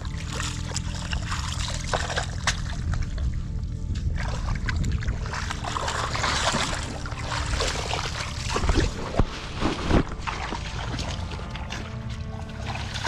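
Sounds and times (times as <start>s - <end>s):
low rumble: 0.0s - 13.0s
water splashing and sloshing: 0.0s - 13.0s.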